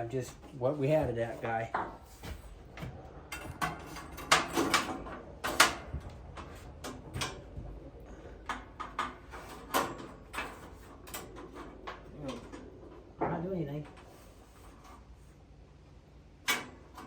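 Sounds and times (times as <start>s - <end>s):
hand tools clicking and clanking: 3.3s - 7.6s.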